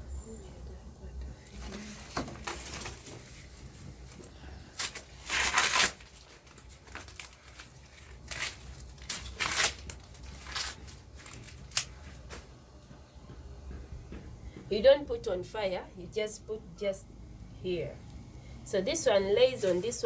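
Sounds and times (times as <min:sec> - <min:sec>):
sticks and maize cobs rustling: 0:01.7 - 0:12.5.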